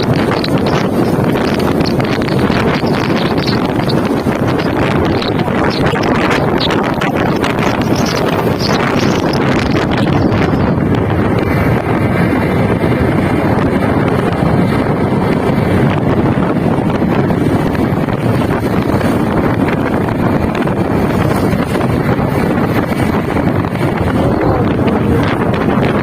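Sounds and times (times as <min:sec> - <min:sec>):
motorcycle engine: 0:00.0 - 0:26.0
road noise: 0:00.0 - 0:26.0
wind on microphone: 0:00.0 - 0:26.0.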